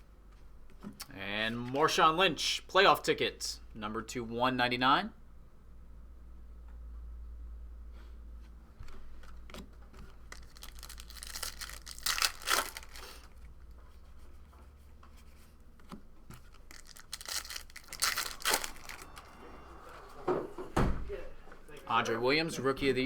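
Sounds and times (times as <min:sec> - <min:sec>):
wrapper crinkling: 0:10.1 - 0:13.7, 0:16.3 - 0:19.4
foil pack tearing: 0:10.2 - 0:13.4, 0:16.4 - 0:19.1
steady low hum: 0:13.2 - 0:23.0.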